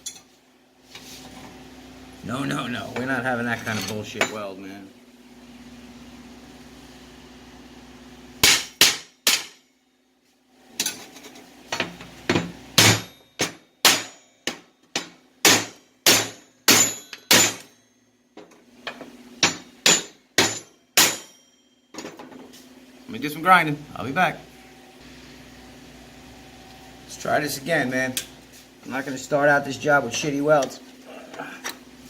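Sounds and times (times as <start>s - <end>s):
hammer striking steel: 8.4s - 9.7s, 12.4s - 17.8s, 19.4s - 21.7s.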